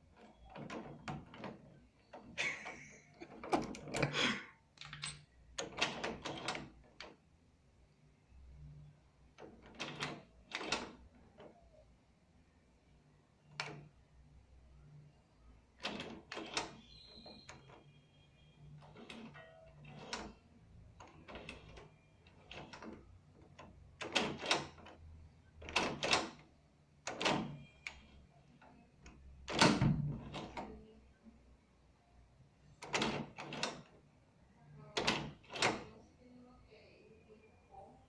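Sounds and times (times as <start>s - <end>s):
key clicking in door lock: 3.2s - 4.1s, 4.8s - 7.2s, 23.6s - 25.0s, 27.0s - 28.0s, 32.8s - 33.9s, 35.0s - 35.9s.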